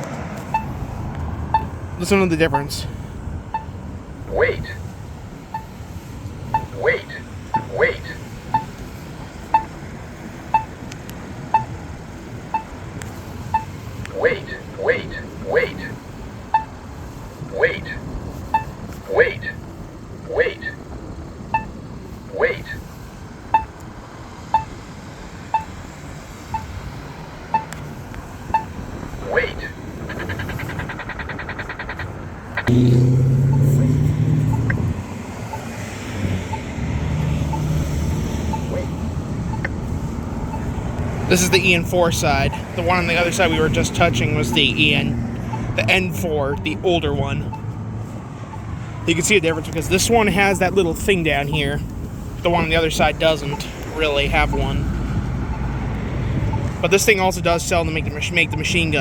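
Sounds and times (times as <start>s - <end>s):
crosswalk button locator ticks: 0.0s - 2.8s, 3.4s - 22.8s, 23.4s - 24.9s, 25.5s - 57.2s
car passing with engine hum: 0.0s - 59.0s
short sharp beeps: 0.5s - 0.8s, 1.5s - 1.8s, 3.5s - 3.8s, 5.5s - 5.8s, 6.5s - 8.8s, 9.5s - 9.7s, 10.5s - 10.7s, 11.5s - 11.8s, 12.5s - 12.8s, 13.5s - 15.9s, 16.5s - 16.8s, 17.5s - 19.6s, 21.5s - 22.7s, 23.5s - 23.8s, 24.5s - 24.7s, 25.5s - 25.7s, 27.5s - 27.8s, 28.5s - 32.0s, 41.3s - 47.7s, 52.5s - 54.9s
fast high ticks: 28.5s - 33.7s.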